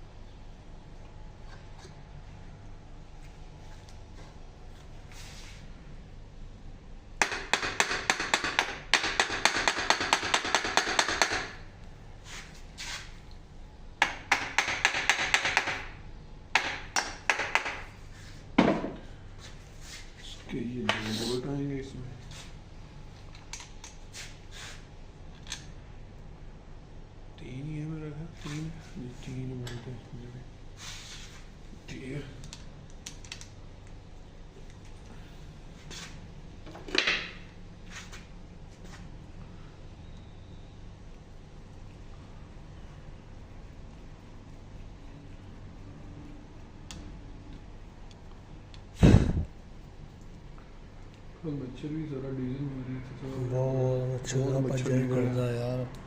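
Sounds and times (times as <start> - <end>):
steady low hum: 0.0 - 56.0.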